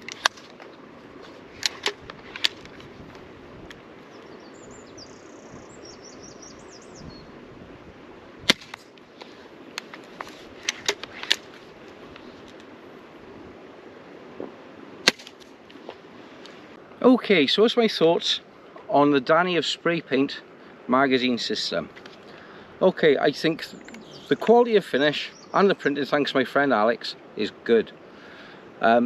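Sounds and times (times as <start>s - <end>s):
crossbow string snapping: 8.5s - 9.0s, 15.0s - 15.5s.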